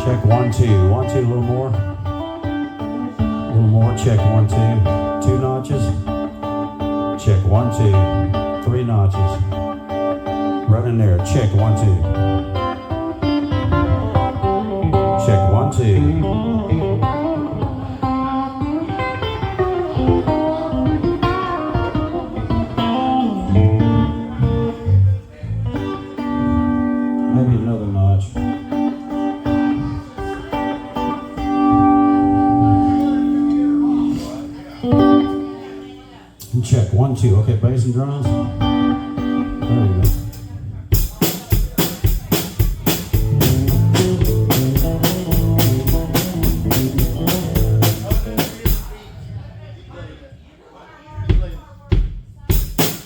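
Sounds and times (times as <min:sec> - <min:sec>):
electric guitar through pa: 0:00.0 - 0:49.4
drum kit steady beat: 0:39.5 - 0:49.1, 0:51.3 - 0:53.0.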